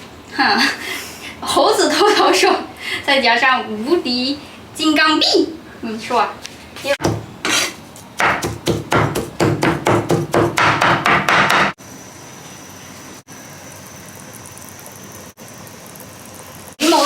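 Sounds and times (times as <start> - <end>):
knife chopping meat on cutting board: 7.0 - 11.8.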